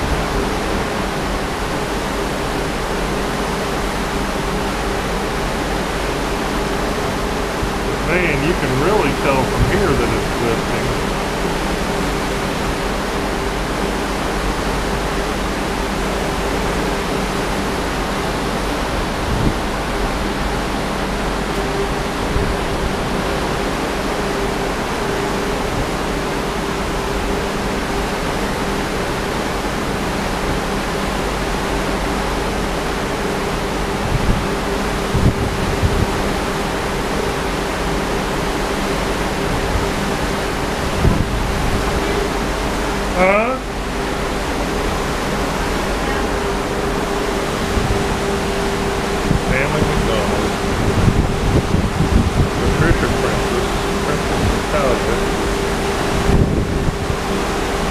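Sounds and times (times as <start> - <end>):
sea rushing: 0.0 - 57.9
high wind buffeting microphone: 18.6 - 20.5, 33.9 - 36.5, 39.4 - 43.1, 44.3 - 57.9.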